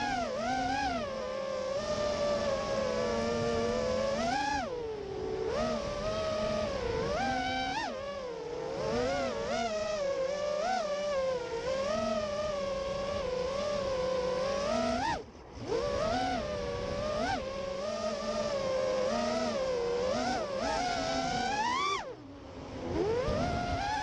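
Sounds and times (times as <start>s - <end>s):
drone motors whining: 0.0s - 24.0s.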